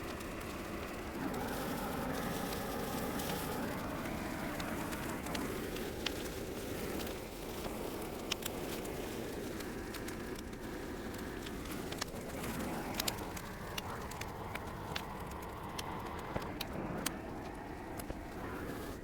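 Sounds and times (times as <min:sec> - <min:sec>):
brush crackling and popping: 0:00.0 - 0:19.0
torch flame roaring: 0:00.0 - 0:19.0.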